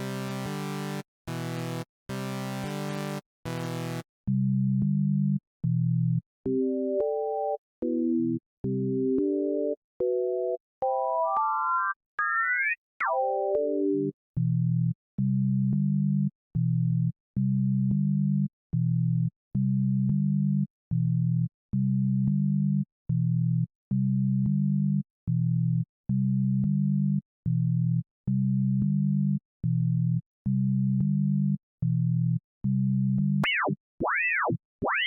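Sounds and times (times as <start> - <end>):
high synth tone sweeping: 33.4 - 35.0
synthesizer tone with clicks: 33.4 - 35.0.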